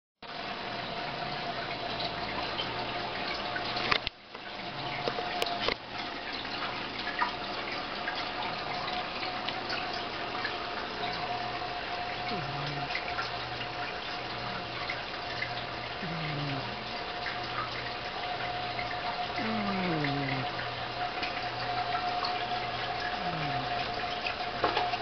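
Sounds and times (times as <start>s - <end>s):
water filter trickling and bubbling: 0.2s - 25.0s
steady hum: 7.7s - 24.8s.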